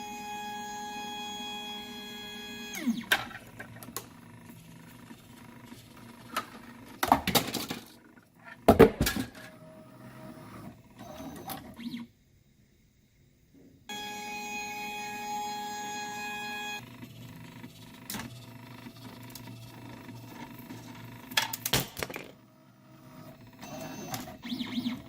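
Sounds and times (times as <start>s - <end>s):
stepper motor whine: 13.9s - 21.3s.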